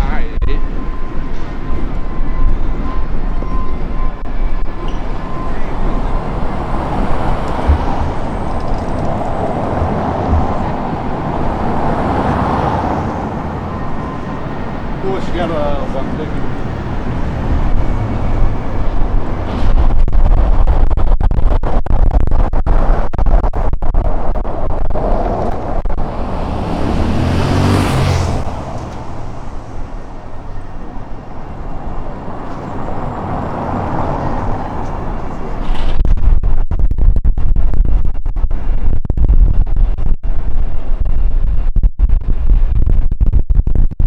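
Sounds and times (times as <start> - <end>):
wind buffeting microphone: 0.0 - 44.0
vehicle passing close by: 4.6 - 19.8, 25.0 - 36.0.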